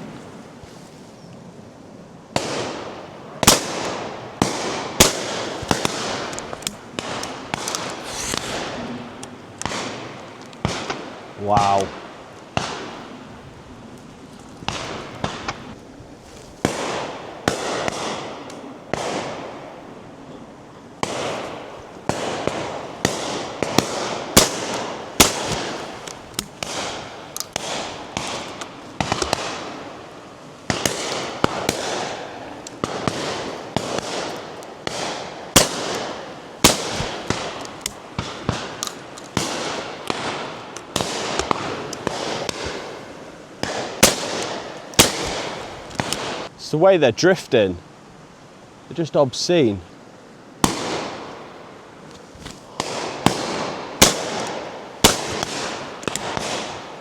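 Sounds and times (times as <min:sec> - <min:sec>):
shotgun shots with echo: 0:02.4 - 0:06.3, 0:22.1 - 0:29.8, 0:32.8 - 0:43.0, 0:43.6 - 0:46.5, 0:52.8 - 0:57.0.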